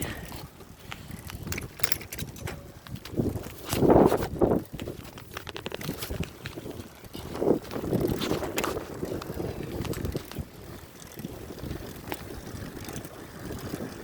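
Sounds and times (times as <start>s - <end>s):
bicycle ticking: 0.0s - 14.0s
wind buffeting microphone: 0.0s - 14.0s.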